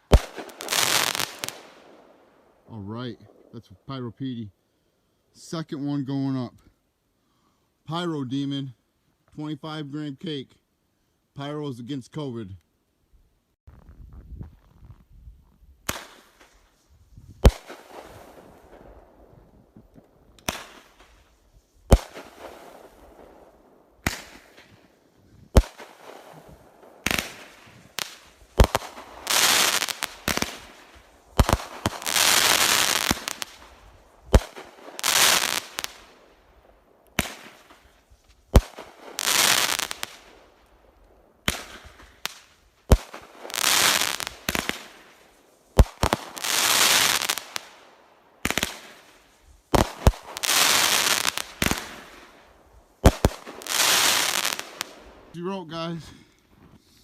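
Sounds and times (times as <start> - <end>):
firework hiss: 0.0 - 2.0, 25.5 - 36.4, 37.2 - 40.5, 41.4 - 47.8, 48.4 - 55.3
firework shots: 0.0 - 2.3, 15.8 - 55.4.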